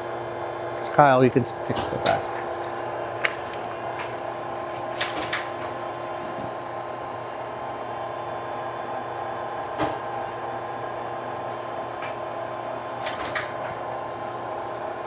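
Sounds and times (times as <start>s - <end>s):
grinder machine hum: 0.0s - 13.0s
machine clicks: 1.7s - 5.7s, 13.0s - 13.8s.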